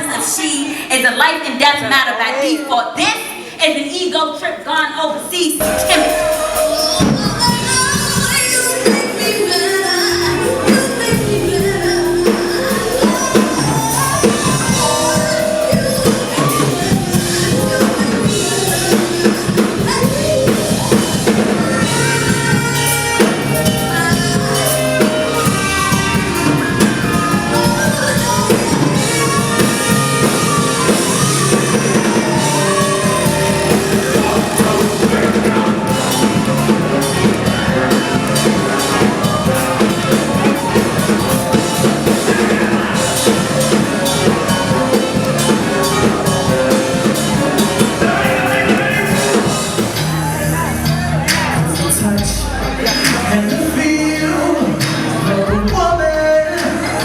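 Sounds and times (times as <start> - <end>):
person singing: 5.6 - 50.6
drum kit beat: 5.6 - 57.0.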